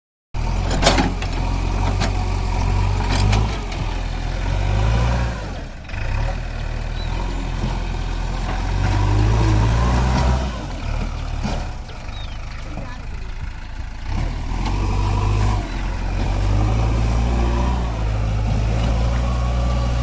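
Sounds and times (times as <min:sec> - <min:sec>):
diesel engine revving: 0:00.4 - 0:20.0.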